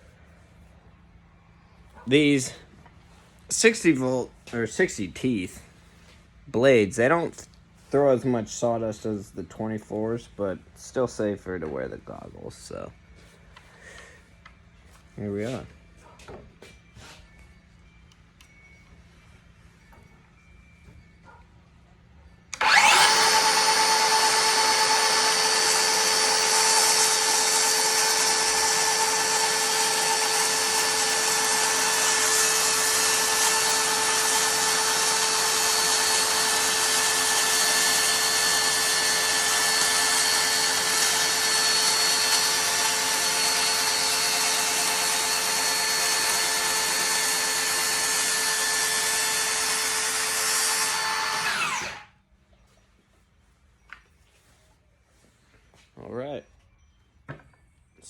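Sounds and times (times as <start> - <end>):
circular saw cutting wood: 22.5 - 52.1.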